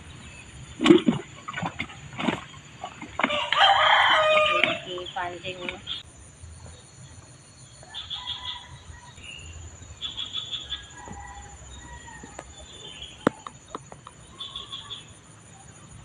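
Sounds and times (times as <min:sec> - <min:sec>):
birds chirping in trills: 0:03.9 - 0:16.0.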